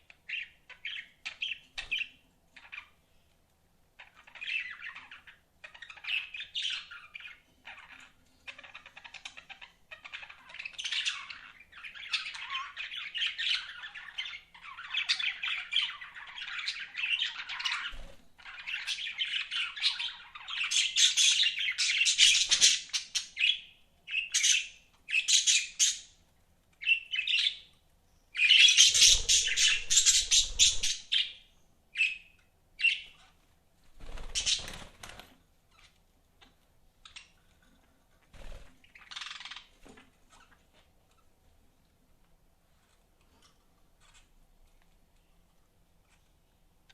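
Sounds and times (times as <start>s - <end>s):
budgerigars chirping and warbling: 0.1s - 3.0s, 4.0s - 26.2s, 26.8s - 27.7s, 28.4s - 33.4s, 34.0s - 34.9s, 38.4s - 39.7s.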